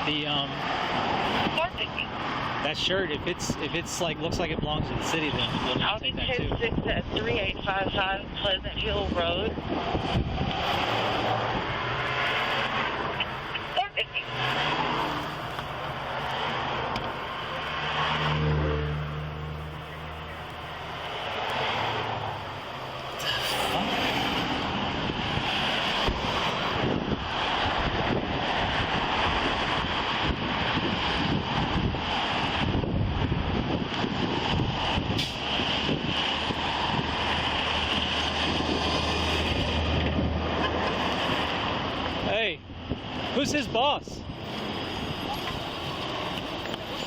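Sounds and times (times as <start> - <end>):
road noise: 0.0 - 47.0
wind on microphone: 0.6 - 47.0
vehicle engine passing by: 9.0 - 31.2.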